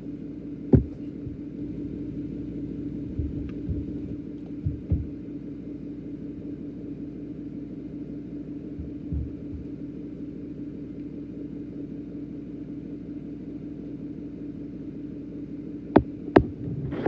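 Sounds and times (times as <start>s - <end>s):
low machine hum: 0.0s - 17.0s
short low thump: 0.7s - 1.4s, 3.0s - 5.2s, 8.8s - 9.7s.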